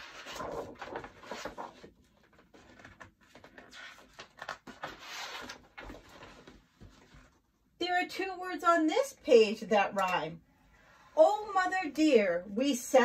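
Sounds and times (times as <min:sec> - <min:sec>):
book pages turning: 0:00.0 - 0:07.4.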